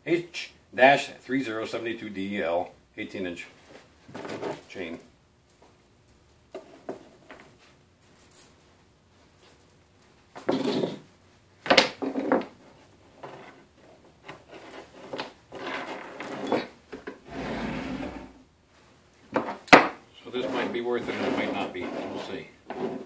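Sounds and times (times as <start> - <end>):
saw chain scraping and rattling: 14.3 - 18.4, 20.3 - 23.0.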